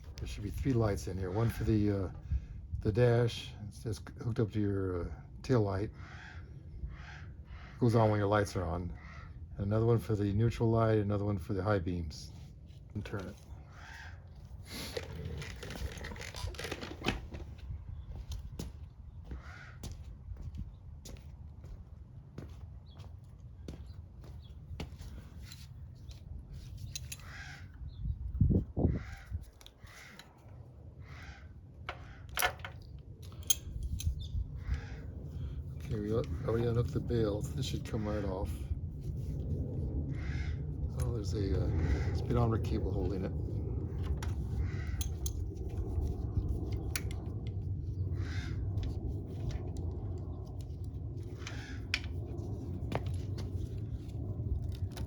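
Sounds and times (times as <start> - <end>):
low background hum: 0.0 - 55.0
light clicks of handled parts: 24.8 - 27.4, 31.9 - 34.4, 44.0 - 47.7.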